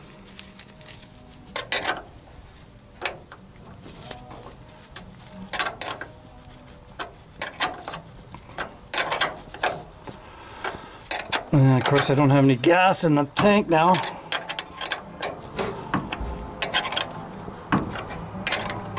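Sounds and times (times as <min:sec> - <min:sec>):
metallic clicks of tools: 0:10.6 - 0:12.2, 0:13.9 - 0:17.1, 0:17.9 - 0:18.9.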